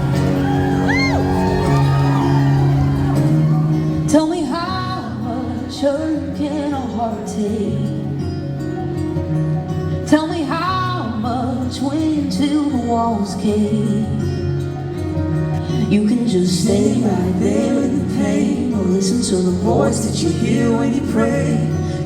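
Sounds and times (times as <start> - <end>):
live band sustained chords: 0.0 - 22.0
wordless singing: 15.6 - 22.0.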